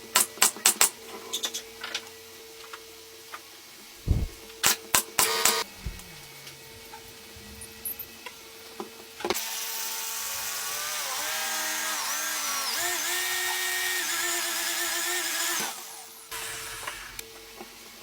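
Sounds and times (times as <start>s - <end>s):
power tool motor whining: 9.4s - 17.2s.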